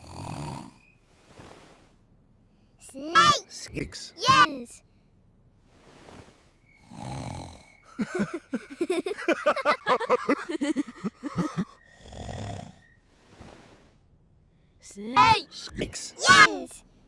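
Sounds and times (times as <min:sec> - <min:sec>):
cartoon rattling snore: 0:00.0 - 0:00.8, 0:06.8 - 0:07.8, 0:11.9 - 0:12.8.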